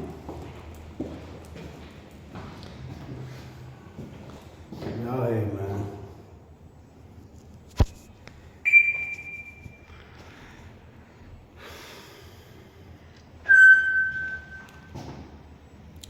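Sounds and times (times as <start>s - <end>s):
long steady whistles: 13.4s - 14.9s.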